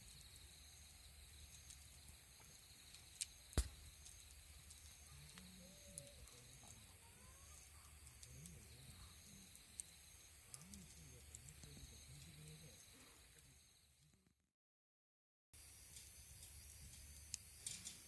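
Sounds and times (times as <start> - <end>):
campfire wood popping: 0.0 - 13.5
faint low voices: 4.9 - 9.8, 10.4 - 13.7.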